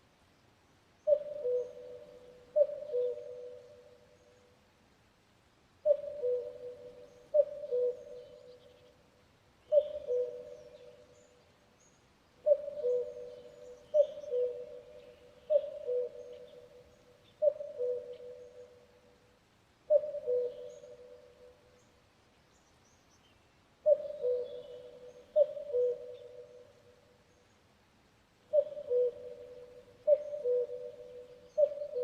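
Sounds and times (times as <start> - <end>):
cuckoo calling: 1.1 - 4.4, 5.8 - 8.8, 9.7 - 11.2, 12.4 - 18.9, 19.9 - 21.6, 23.8 - 26.8, 28.5 - 32.0
faint bird chirps: 9.6 - 19.0, 19.9 - 27.7, 28.5 - 32.0.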